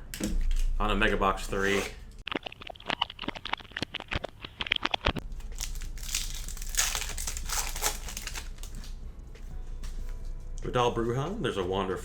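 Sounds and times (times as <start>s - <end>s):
foil wrapper tearing and crinkling: 1.5s - 2.0s, 4.8s - 9.0s.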